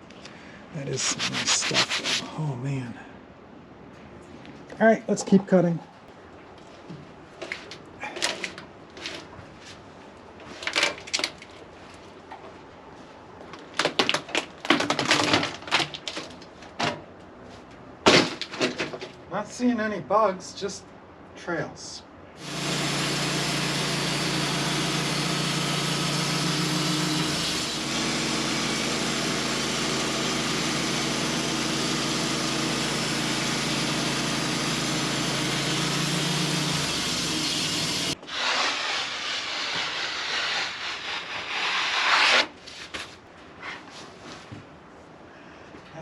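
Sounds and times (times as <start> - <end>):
rough uneven noise: 0.8 - 2.9, 38.2 - 43.9
sawmill engine running: 22.4 - 41.3
saw blade hissing: 37.6 - 42.5.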